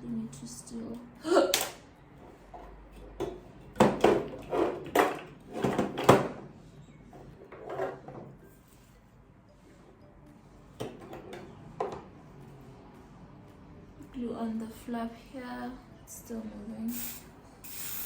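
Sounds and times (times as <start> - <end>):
objects knocking and clattering: 3.0 - 6.4, 7.4 - 8.4.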